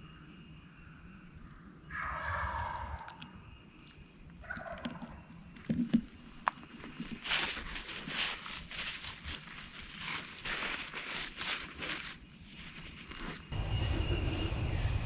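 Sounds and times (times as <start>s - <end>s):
rustling: 6.8s - 15.0s
turkey gobbling: 13.6s - 15.0s.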